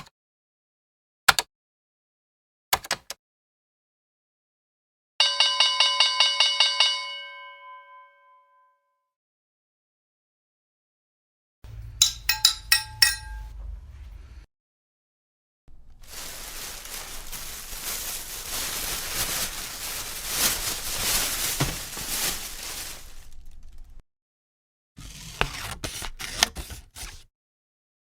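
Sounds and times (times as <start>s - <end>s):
sharp metallic clinks: 12.0s - 13.5s.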